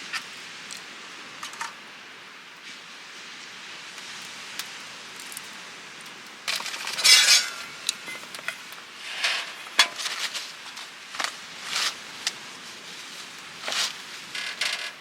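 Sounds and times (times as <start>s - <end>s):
faint steady hiss: 0.0s - 15.0s
tableware clinking and scraping: 6.5s - 10.4s.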